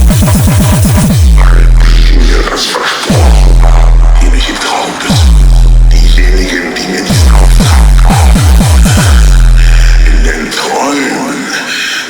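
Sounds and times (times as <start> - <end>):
deep bass kick: 0.0 - 2.5, 3.1 - 6.5, 7.1 - 10.4
techno music: 0.0 - 11.7.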